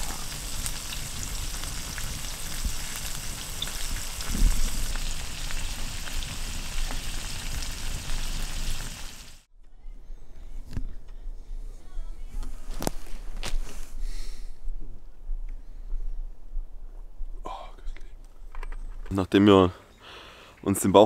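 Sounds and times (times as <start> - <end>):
meat sizzling and crackling: 0.0 - 9.5.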